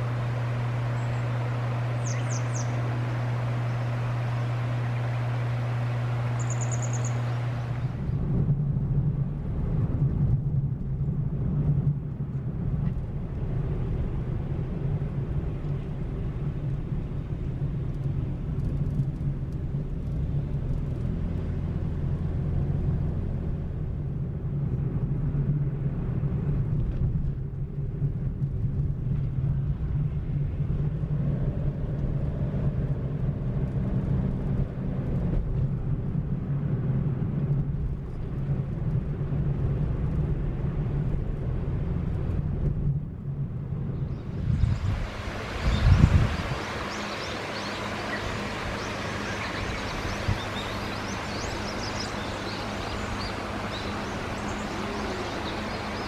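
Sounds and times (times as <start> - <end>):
car engine idling: 0.0 - 8.2, 44.0 - 56.0
engine and road rumble: 0.0 - 56.0
bird chirping: 0.8 - 7.9, 45.5 - 56.0.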